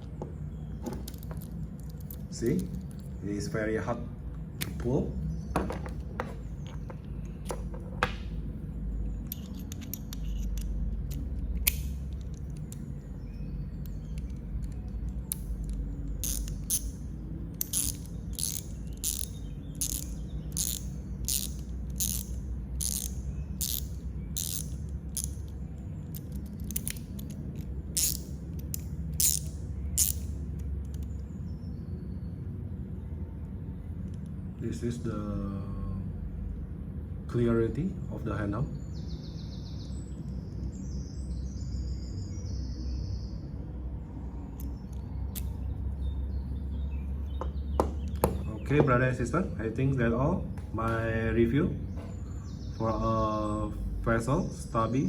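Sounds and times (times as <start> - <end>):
low steady hum: 0.0 - 55.0
ratchet screwdriver clicking: 14.2 - 17.0, 17.6 - 25.4, 26.1 - 31.0.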